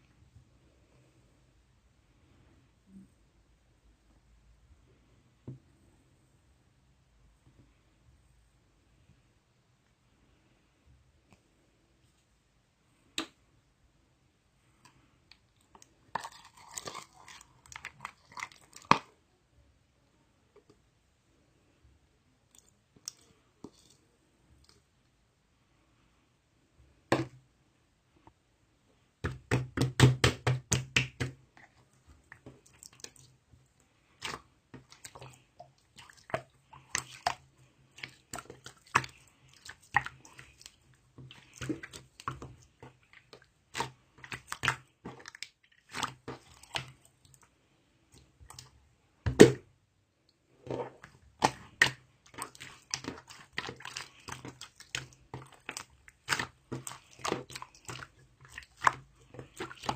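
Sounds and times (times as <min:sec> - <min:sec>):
wet chewing mouth sounds: 0:50.7 - 0:59.9.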